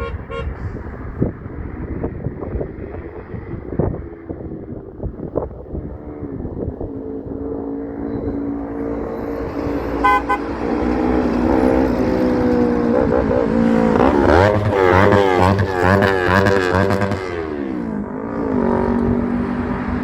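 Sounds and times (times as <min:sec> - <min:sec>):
truck air horn chord: 0:00.0 - 0:00.8, 0:08.9 - 0:11.5, 0:13.6 - 0:17.2
truck rumble: 0:00.0 - 0:20.0.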